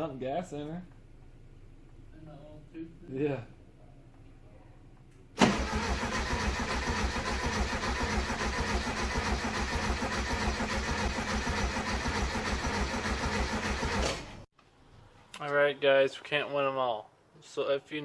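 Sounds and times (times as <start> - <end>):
car engine cranking: 5.4 - 14.5.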